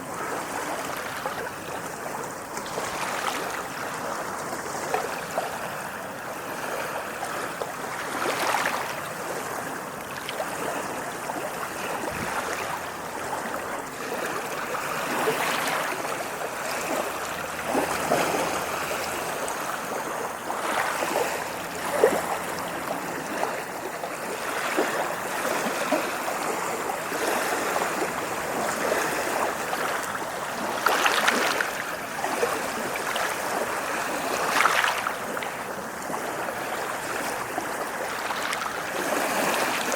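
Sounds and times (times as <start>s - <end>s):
ocean waves washing on shore: 0.0s - 39.9s
small sharp water splashes: 7.3s - 9.0s, 27.3s - 39.9s.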